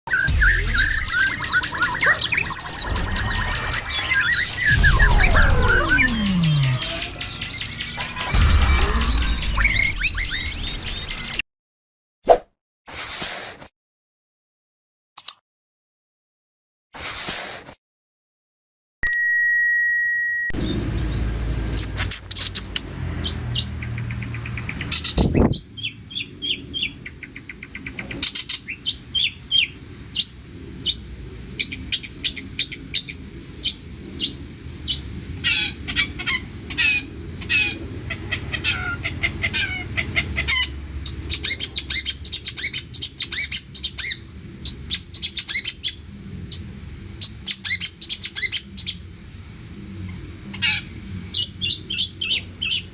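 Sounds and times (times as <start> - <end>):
brief steady tone: 0.1 - 10.9, 19.0 - 20.7.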